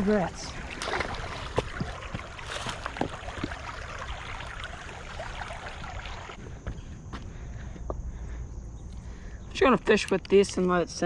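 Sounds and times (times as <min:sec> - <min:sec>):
creek water rushing: 0:00.0 - 0:06.4.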